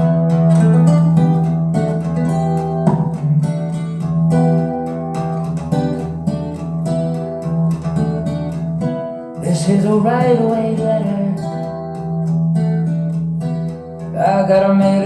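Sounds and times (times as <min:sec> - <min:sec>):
plucked and strummed guitars: 0:00.0 - 0:15.0.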